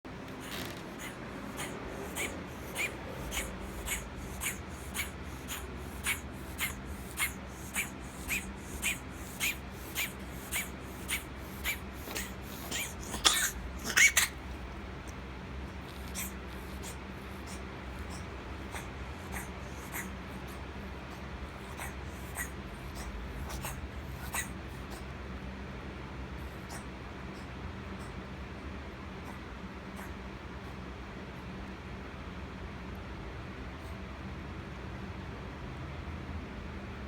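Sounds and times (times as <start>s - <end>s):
cat hacking coughs: 11.6s - 14.4s.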